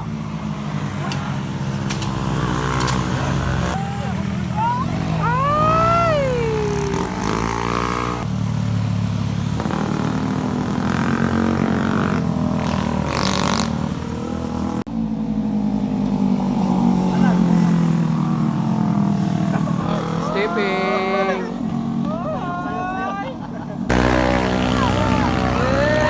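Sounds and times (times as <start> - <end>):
motorcycle engine running: 0.0 - 22.3, 23.9 - 26.0
high drawn-out call: 3.3 - 8.2, 19.7 - 23.2, 23.9 - 26.0.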